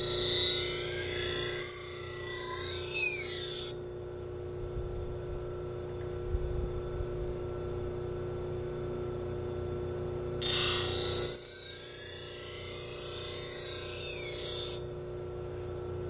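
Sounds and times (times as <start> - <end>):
knife scraping on grinding wheel: 0.0 - 3.8, 10.4 - 14.9
grinder motor hum: 0.0 - 16.0.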